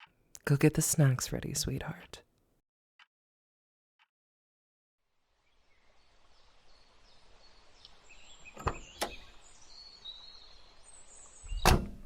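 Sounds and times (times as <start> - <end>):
faint bird chirps: 5.4 - 11.8.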